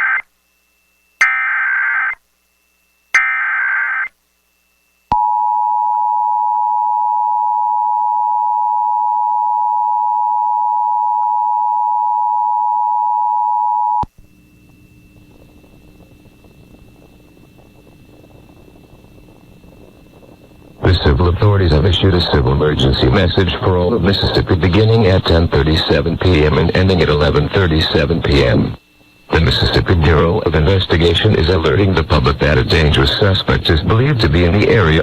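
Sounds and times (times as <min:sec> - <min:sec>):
faint hum: 0:00.0 - 0:35.0
screeching digital header bursts: 0:01.2 - 0:02.2, 0:03.2 - 0:04.1.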